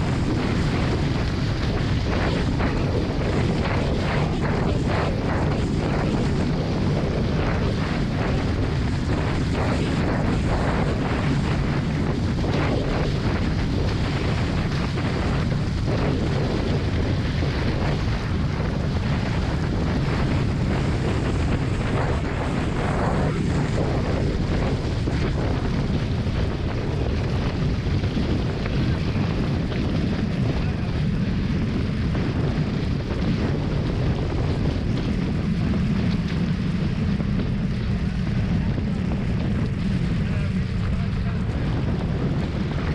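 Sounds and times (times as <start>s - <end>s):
water rushing along hulls: 0.0s - 42.9s
wind buffeting microphone: 0.0s - 42.9s.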